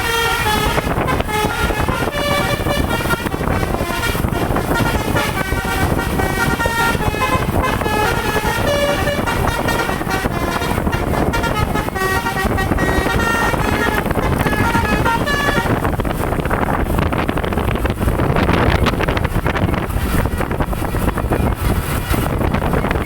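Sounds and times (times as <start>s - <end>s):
multi-tone air horn melody: 0.0s - 16.2s
engine rumble: 0.0s - 23.0s
wind noise: 0.0s - 23.0s.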